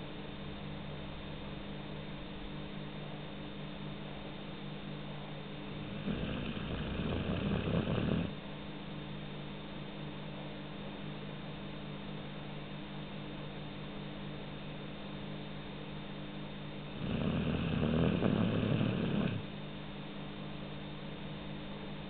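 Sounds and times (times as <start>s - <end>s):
steady low hum: 0.0s - 22.0s
puppy snoring: 5.7s - 8.4s, 16.8s - 19.6s.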